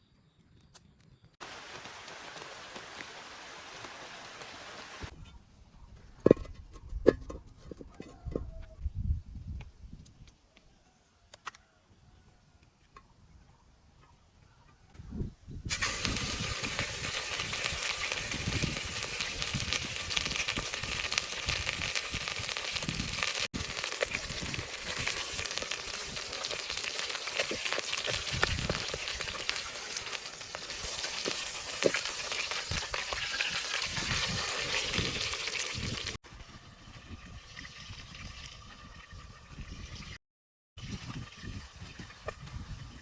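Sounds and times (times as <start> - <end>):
food sizzling over wood fire: 1.4 - 5.1, 15.7 - 36.2
sharp fire pops: 15.7 - 36.2.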